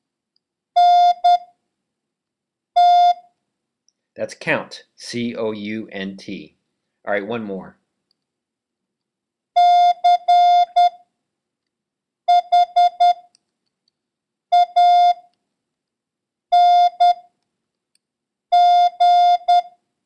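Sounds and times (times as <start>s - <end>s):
morse code beeps: 9.6s - 11.0s, 12.3s - 13.2s, 14.6s - 15.2s, 16.6s - 17.2s, 18.6s - 19.7s.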